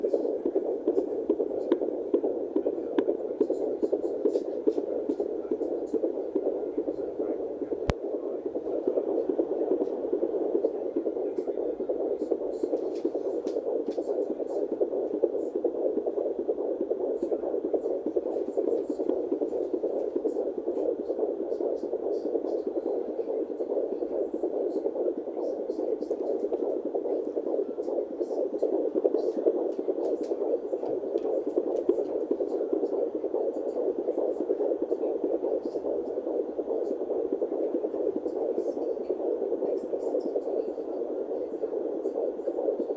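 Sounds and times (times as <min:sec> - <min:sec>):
fetal heartbeat pulsing whoosh: 0:00.0 - 0:42.9.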